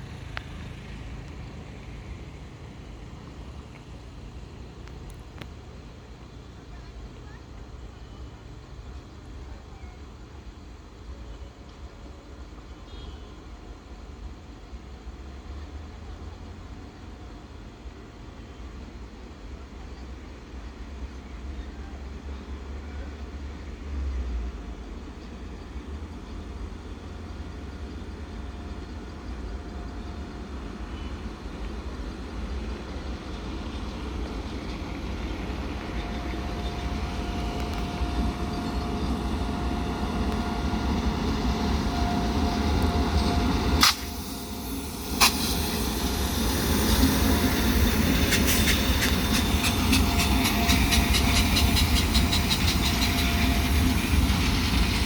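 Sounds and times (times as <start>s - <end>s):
train rumble: 0.0s - 55.0s
sharp clicks: 43.8s - 44.2s
wheels clattering over rail joints: 47.9s - 55.0s.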